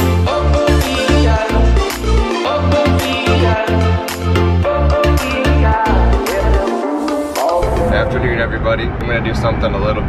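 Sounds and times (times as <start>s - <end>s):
music with bass beat and percussion: 0.0s - 8.2s.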